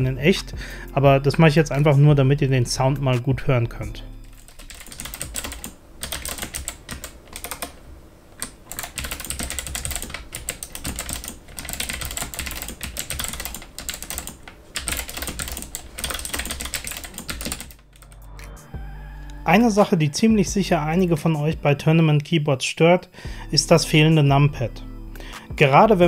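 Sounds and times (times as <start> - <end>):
typing on clicky keyboard: 4.3 - 7.8, 8.4 - 18.3.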